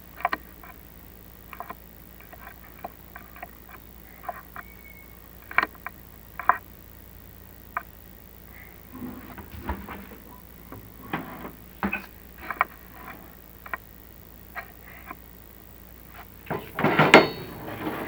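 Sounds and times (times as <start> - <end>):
scraping rustle: 8.6 - 13.4, 16.1 - 18.0.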